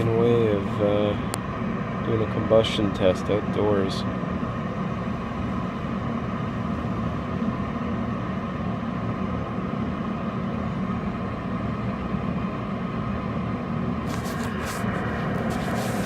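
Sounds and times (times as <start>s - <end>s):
constant hum: 0.0s - 16.0s
furnace flue exhaust blowing: 0.0s - 16.0s.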